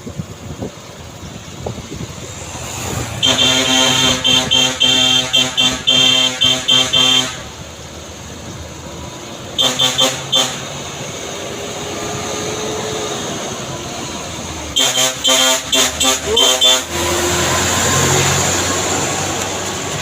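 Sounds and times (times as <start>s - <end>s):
vehicle and road noise: 0.0s - 20.0s
vehicle horn short blasts: 3.2s - 7.5s, 9.6s - 10.7s, 14.8s - 16.9s.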